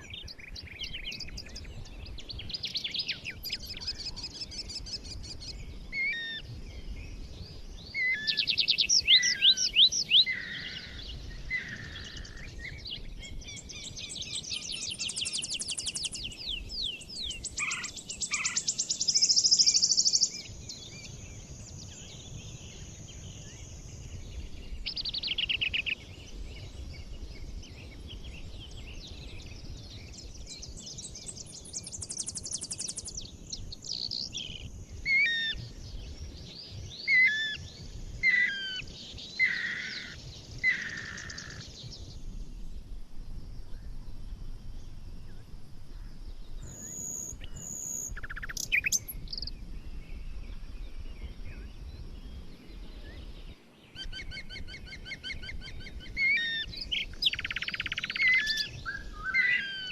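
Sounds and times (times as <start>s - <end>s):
songbirds trilling: 0.0s - 42.9s, 43.6s - 59.9s
bird chirping calls: 7.9s - 21.2s, 46.6s - 49.6s, 50.2s - 59.9s.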